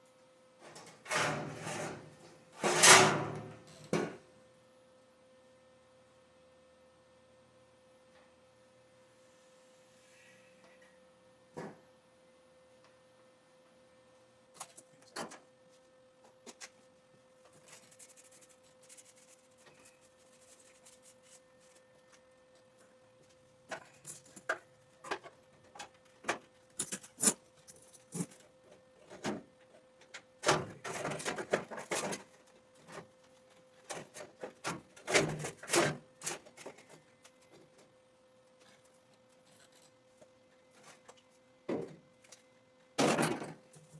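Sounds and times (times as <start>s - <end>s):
tools and metal parts clattering: 0.6s - 4.2s, 23.7s - 28.4s, 30.4s - 32.4s, 33.9s - 37.0s.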